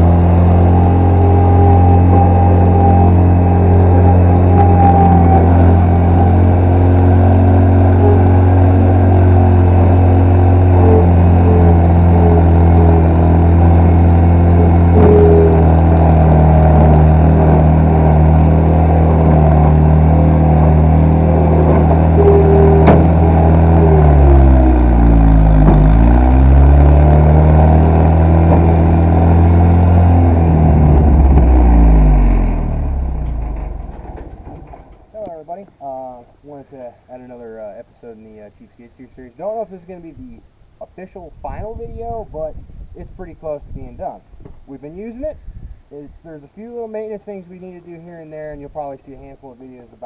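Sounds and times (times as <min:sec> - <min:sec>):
skid steer engine running: 0:00.0 - 0:38.6.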